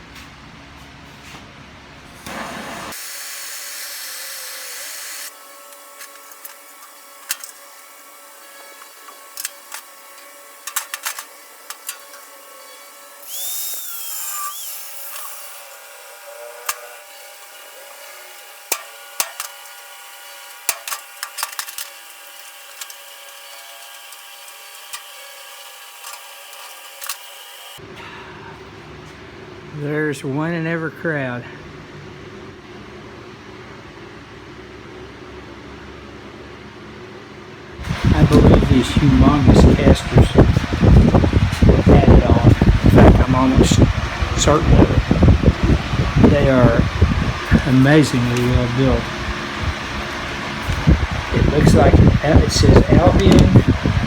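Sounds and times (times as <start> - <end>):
power drill running: 2.2 - 27.8, 37.8 - 54.0.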